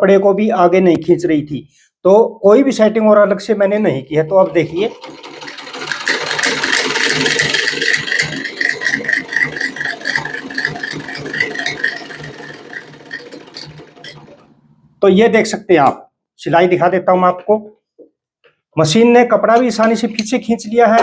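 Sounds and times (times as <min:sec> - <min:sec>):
sewing machine stitching: 0:04.3 - 0:14.7.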